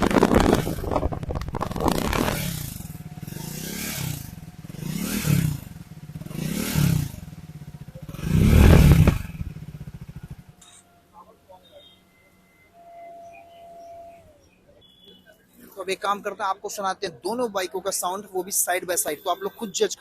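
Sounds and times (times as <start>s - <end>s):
motorcycle engine revving: 0.0s - 10.8s.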